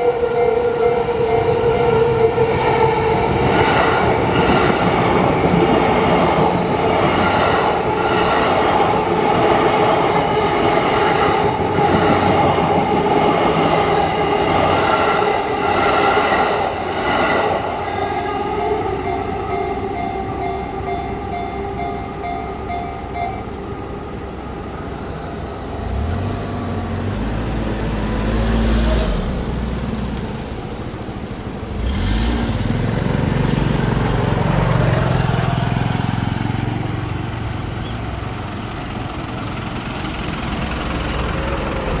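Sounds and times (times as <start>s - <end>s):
vehicles driving past: 23.5s - 42.0s
engine accelerating: 25.7s - 37.7s, 38.3s - 42.0s.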